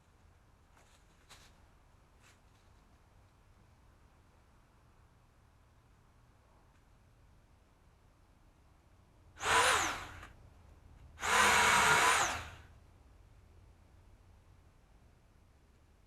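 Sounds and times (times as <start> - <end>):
power tool motor whining: 9.4 - 10.3, 11.2 - 12.6.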